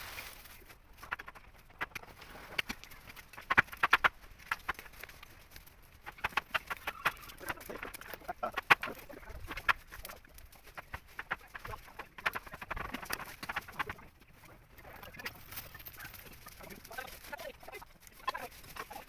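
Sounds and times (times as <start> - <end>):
birds giving clicky calls: 0.9 - 19.0.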